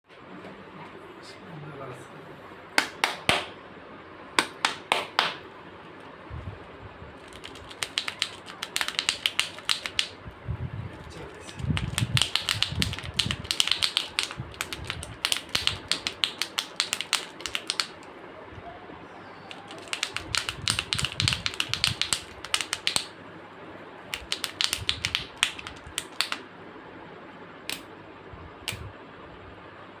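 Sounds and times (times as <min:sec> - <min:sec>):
plastic eggs clicking and crackling: 0:07.2 - 0:10.2, 0:11.1 - 0:18.1, 0:19.5 - 0:23.1, 0:24.1 - 0:26.4.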